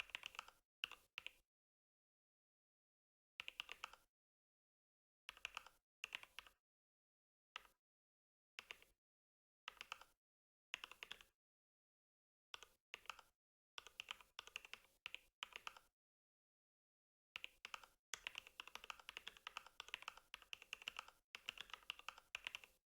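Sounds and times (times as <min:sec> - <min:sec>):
mechanical keyboard typing: 0:13.9 - 0:14.8, 0:17.4 - 0:22.8.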